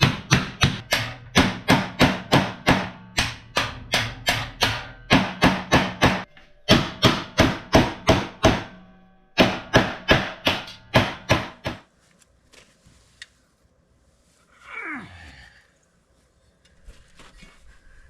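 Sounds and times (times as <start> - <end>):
hammer striking metal: 0.0 - 11.8.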